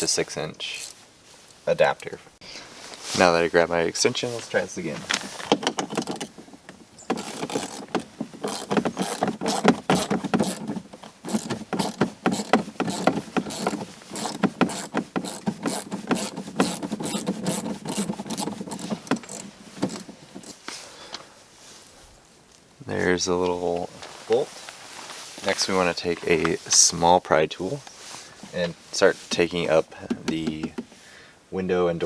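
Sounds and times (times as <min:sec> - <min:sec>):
socket ratchet clicking: 0:07.1 - 0:10.7, 0:11.3 - 0:20.6.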